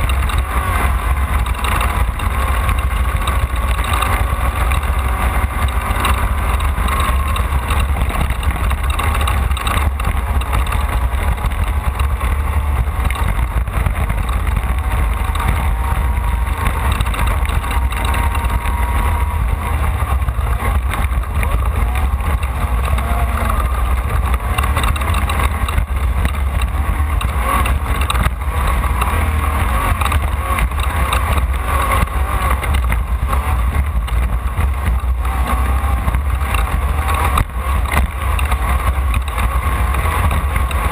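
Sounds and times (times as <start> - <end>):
race car engine running hard: 0.0 - 40.9.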